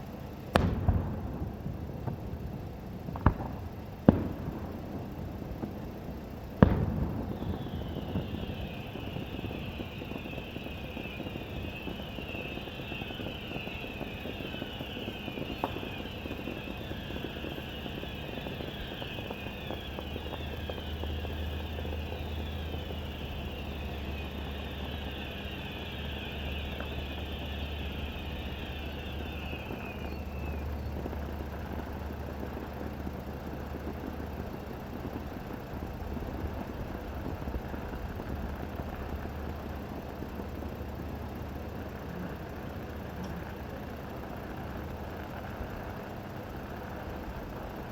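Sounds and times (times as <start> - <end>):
firework whistles falling: 0.0 - 47.9
firework bang: 0.5 - 31.9.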